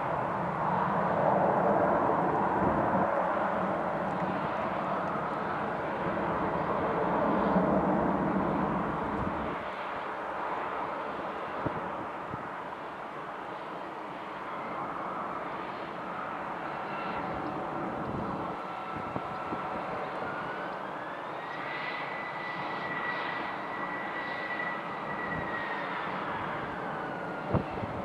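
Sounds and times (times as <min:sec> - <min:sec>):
jet engines whining: 0:00.0 - 0:28.0.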